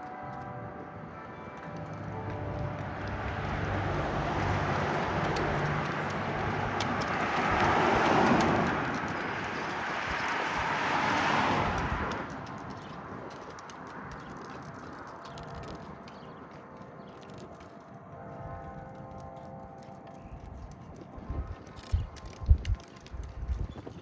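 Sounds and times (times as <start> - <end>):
low hum of church bells: 0.0 - 7.0, 16.3 - 21.7
road vehicle passing by: 1.6 - 17.8.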